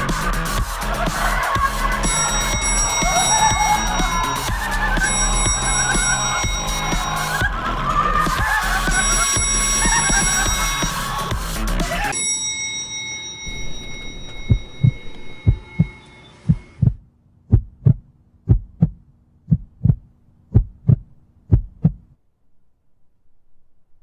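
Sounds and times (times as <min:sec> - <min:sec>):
heartbeat thumps: 0:00.0 - 0:07.8, 0:13.5 - 0:22.2.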